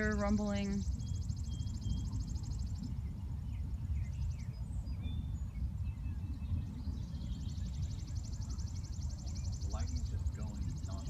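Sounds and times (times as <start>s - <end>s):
distant thunder rumbling: 0.0s - 3.8s, 6.6s - 11.0s.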